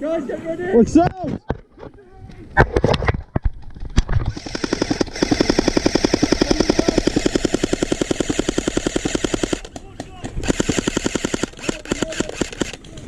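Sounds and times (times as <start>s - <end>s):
airsoft gun firing full auto: 4.4s - 12.8s.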